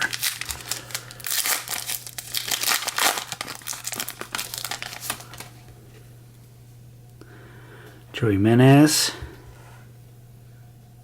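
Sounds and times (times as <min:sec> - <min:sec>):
foil wrapper crinkling: 0:00.0 - 0:05.7.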